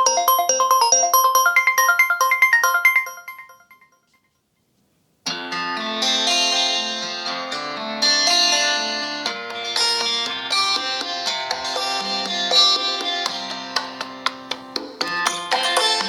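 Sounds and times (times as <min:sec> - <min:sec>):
dense ringtone melody: 0:00.0 - 0:04.1
phone ringtone melody: 0:00.0 - 0:04.2.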